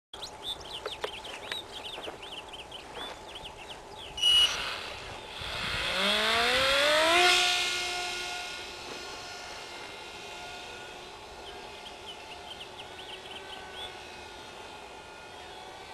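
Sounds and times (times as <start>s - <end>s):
birds chirping: 0.2s - 6.6s, 10.8s - 15.9s
electric motor whining: 0.6s - 15.9s
high beep: 4.2s - 4.6s.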